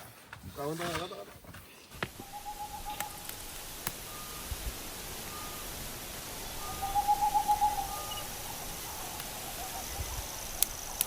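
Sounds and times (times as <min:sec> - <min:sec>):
owl hooting: 0:00.7 - 0:11.0.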